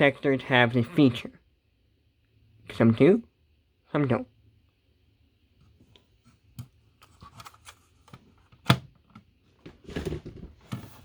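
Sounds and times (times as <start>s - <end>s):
objects handled on a desk: 5.6s - 11.0s.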